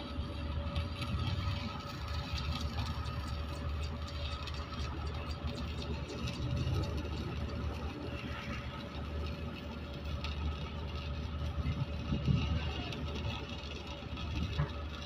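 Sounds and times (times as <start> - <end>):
engine rumbling: 0.0 - 15.0.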